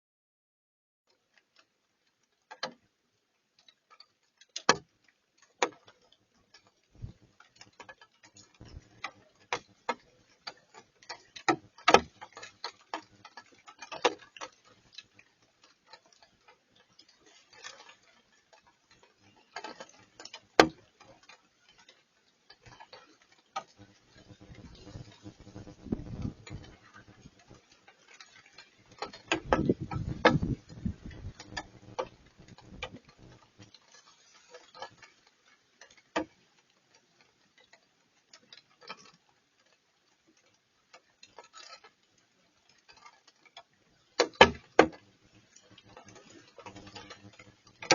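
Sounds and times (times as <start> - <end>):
raindrops tapping: 3.6 - 36.4, 44.0 - 47.9.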